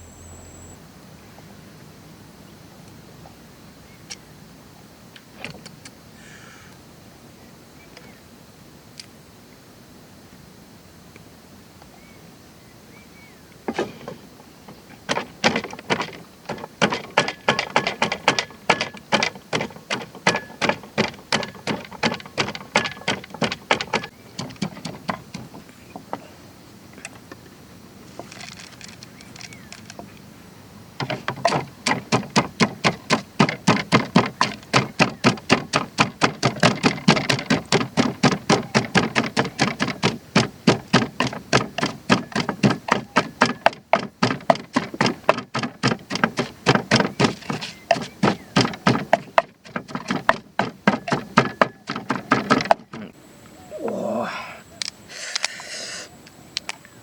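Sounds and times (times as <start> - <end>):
rhythmic knocking: 15.1 - 25.6, 31.0 - 53.0.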